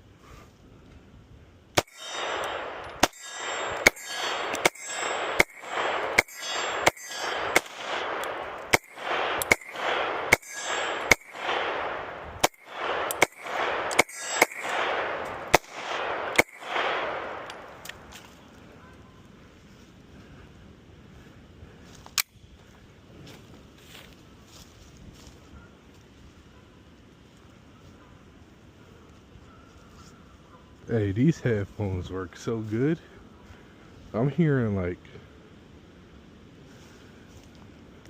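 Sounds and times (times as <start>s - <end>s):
pistol shots echoing: 1.8s - 18.1s.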